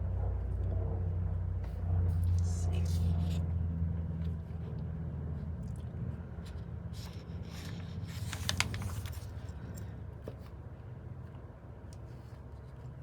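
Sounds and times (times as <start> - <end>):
steady low hum: 0.0 - 8.2
book page turning: 7.0 - 9.4.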